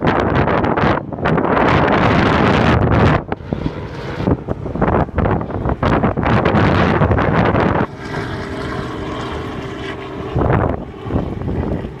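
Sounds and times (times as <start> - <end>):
airplane engine droning: 0.0 - 12.0
wind buffeting microphone: 0.0 - 12.0.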